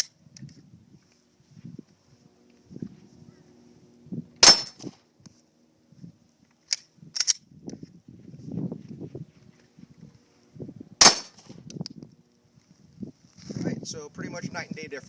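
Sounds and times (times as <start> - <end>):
pistol shot: 4.4 - 5.0, 11.0 - 11.6.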